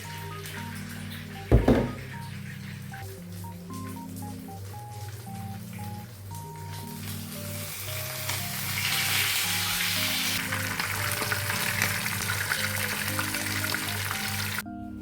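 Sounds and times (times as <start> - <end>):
food frying in hot oil: 0.0 - 14.6.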